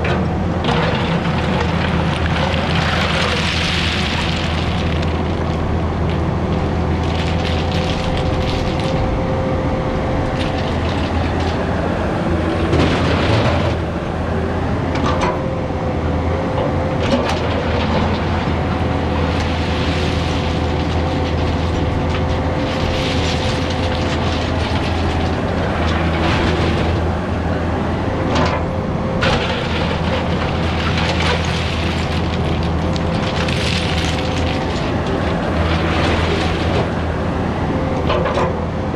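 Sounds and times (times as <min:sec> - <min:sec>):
metal and gravel clanking and scraping: 0:00.0 - 0:09.2, 0:10.2 - 0:11.6, 0:12.6 - 0:13.9, 0:17.0 - 0:27.1, 0:28.3 - 0:37.2
heavy engine running under load: 0:00.0 - 0:38.9.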